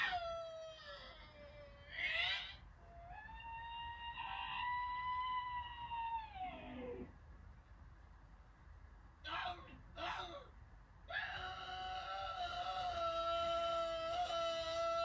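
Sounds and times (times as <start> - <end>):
man cartoon screaming: 11.1 - 15.0.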